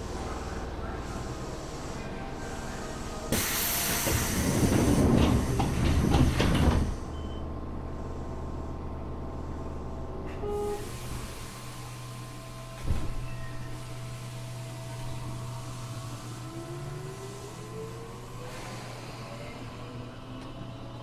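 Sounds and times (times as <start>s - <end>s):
train running hum: 0.0s - 21.0s
loud rushing hiss: 3.3s - 5.6s.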